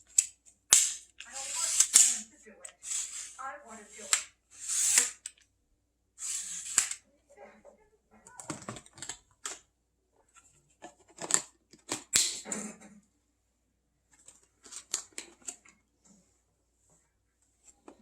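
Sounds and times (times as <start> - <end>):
plastic packaging clicks and rustles: 8.4 - 9.6, 10.7 - 12.2.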